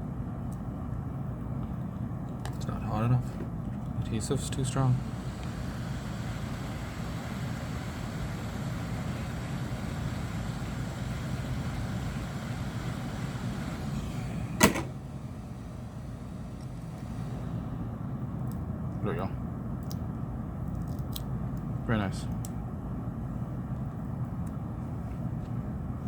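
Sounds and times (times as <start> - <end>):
electric heating tool whirring: 3.8 - 18.6.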